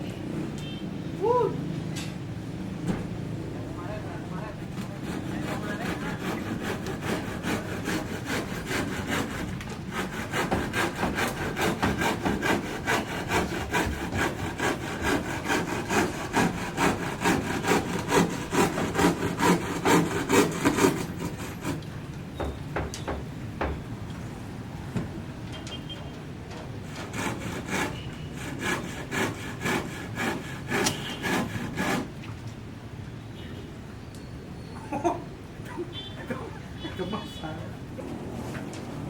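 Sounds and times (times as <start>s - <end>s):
hand saw cutting wood: 4.6s - 21.9s, 26.8s - 32.1s.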